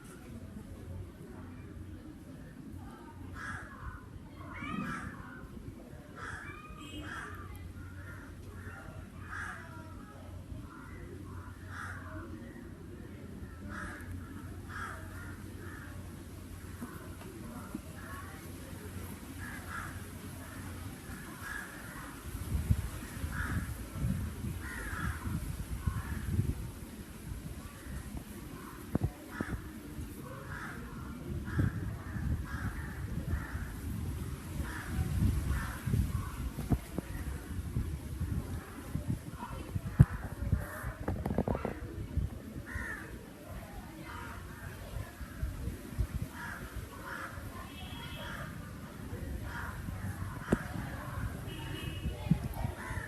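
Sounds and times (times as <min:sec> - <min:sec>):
crows cawing: 0:13.7 - 0:15.9, 0:24.6 - 0:25.2, 0:42.7 - 0:43.1, 0:52.8 - 0:53.0.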